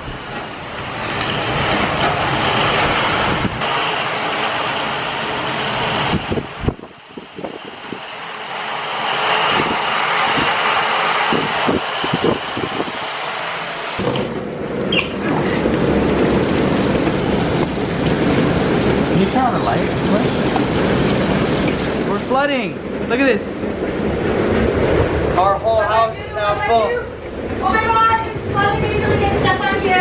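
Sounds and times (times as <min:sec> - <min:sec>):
heavy rain: 0:00.0 - 0:30.0
strong gusting wind: 0:00.0 - 0:30.0
wind buffeting microphone: 0:01.4 - 0:03.6, 0:05.9 - 0:08.2, 0:09.4 - 0:13.2, 0:14.5 - 0:30.0.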